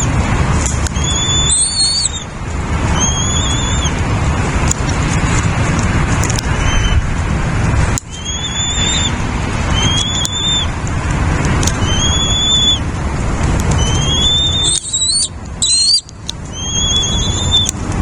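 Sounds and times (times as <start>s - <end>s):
low rushing noise: 0.0s - 18.0s
nestling birds begging calls: 0.8s - 4.1s, 6.2s - 7.1s, 7.9s - 17.8s.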